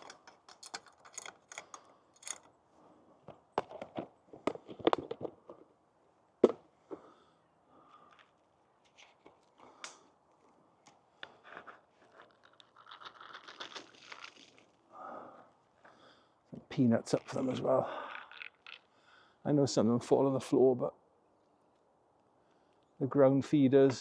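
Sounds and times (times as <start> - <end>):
bird feeders clicking and knocking: 0.0 - 2.5.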